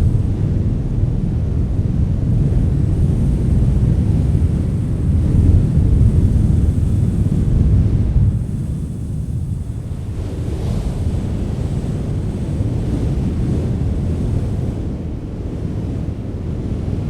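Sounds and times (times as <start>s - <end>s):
wind blowing hard: 0.0s - 17.0s.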